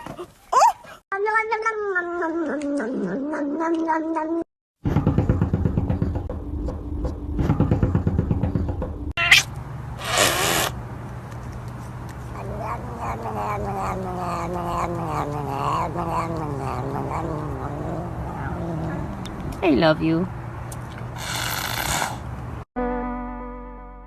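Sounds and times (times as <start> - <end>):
cat yowling: 9.2 - 9.5, 12.4 - 19.3
cat hissing: 9.2 - 10.8, 12.3 - 19.6, 21.2 - 22.3
cat low pulsing sound: 12.3 - 19.6.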